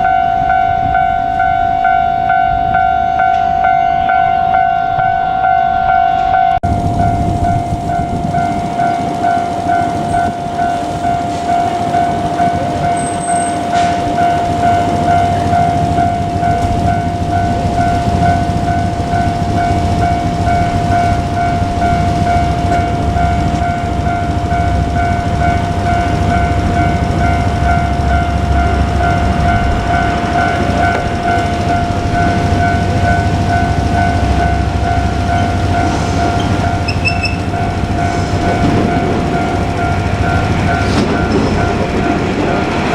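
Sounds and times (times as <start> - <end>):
diesel train rumbling past: 0.0 - 42.9
level crossing bell ringing: 0.0 - 42.9.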